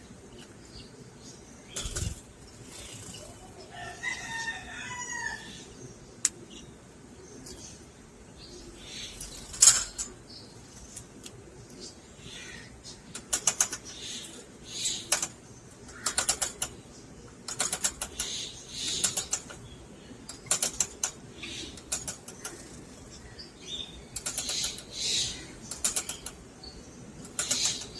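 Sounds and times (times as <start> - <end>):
lovebirds chirping: 0.0 - 27.9
rapid sharp clicks: 13.1 - 14.0, 15.1 - 19.7, 20.3 - 22.9, 24.1 - 26.5, 27.2 - 27.9.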